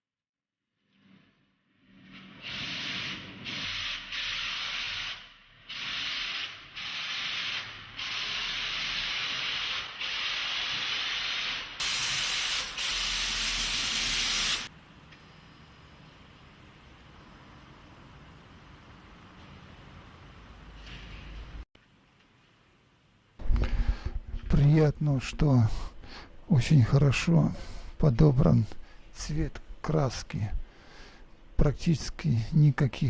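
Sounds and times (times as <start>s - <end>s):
paint spray gun hissing: 2.4s - 14.7s.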